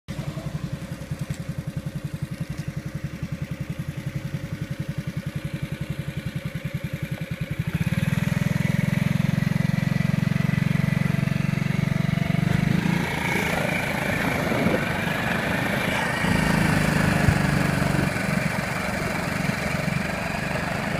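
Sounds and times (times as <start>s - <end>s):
engine chugging: 0.1s - 20.9s.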